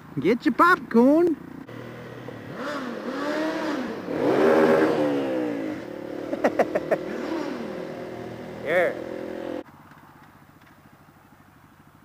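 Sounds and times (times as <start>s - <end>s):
motorcycle engine revving: 1.6s - 9.6s.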